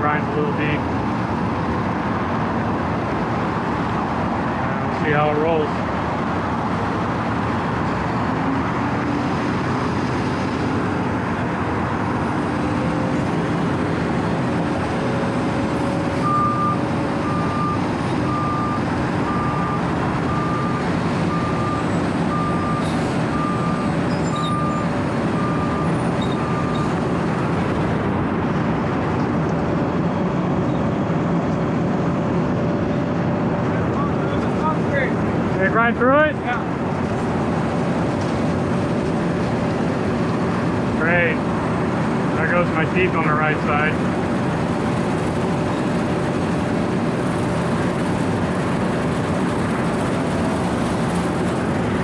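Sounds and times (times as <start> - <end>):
backup alarm beeping: 16.2 - 26.9.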